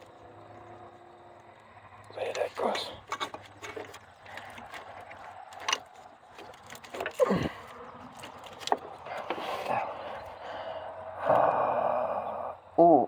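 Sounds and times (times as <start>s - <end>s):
tools clicking and knocking: 3.0s - 7.2s.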